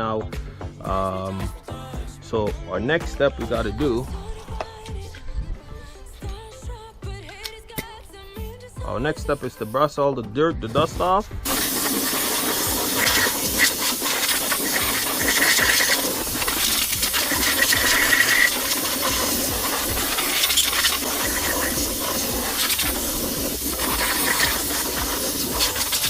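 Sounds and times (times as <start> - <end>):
air blower hissing: 11.4 - 26.0.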